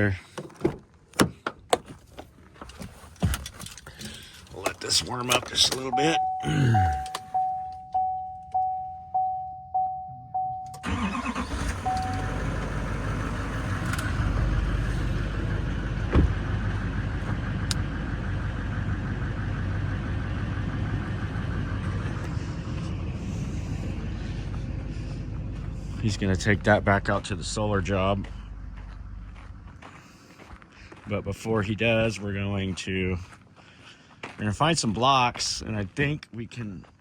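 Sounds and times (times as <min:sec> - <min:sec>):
engine cranking and starting: 0:02.7 - 0:06.0, 0:10.7 - 0:18.0
warning chime dinging: 0:05.8 - 0:12.6
engine idling: 0:10.7 - 0:33.9.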